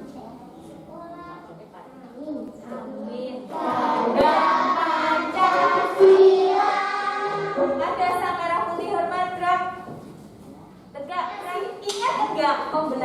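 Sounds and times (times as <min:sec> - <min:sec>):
children singing together: 0:03.5 - 0:07.8.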